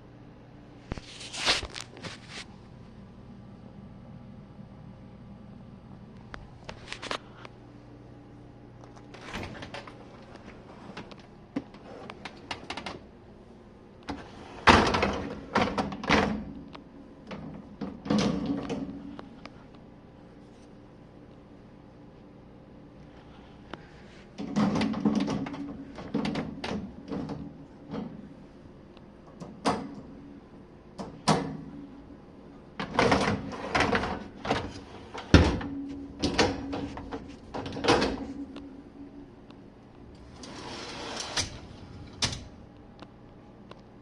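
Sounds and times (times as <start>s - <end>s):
dishwasher door and racks clattering: 9.1s - 11.1s, 14.1s - 16.6s, 17.3s - 19.0s, 24.4s - 28.2s, 32.8s - 38.5s, 40.2s - 42.6s.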